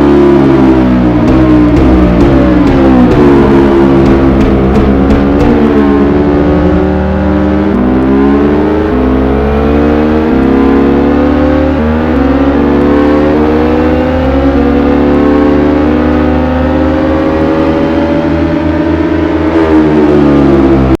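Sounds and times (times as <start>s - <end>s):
motorbike engine accelerating: 0.0s - 21.0s.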